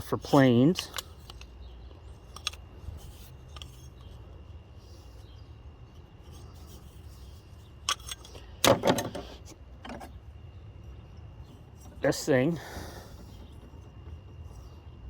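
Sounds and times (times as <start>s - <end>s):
faint steady hum: 0.0s - 15.0s
hand tools clicking and clacking: 7.9s - 9.2s.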